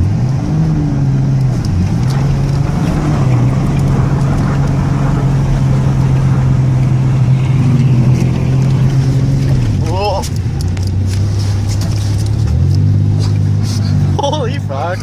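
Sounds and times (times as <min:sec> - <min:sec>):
pickup engine revving high: 0:00.0 - 0:15.0.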